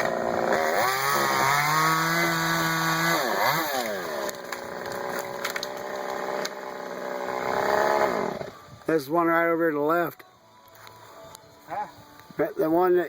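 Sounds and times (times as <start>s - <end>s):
chainsaw revving: 0.0s - 8.6s.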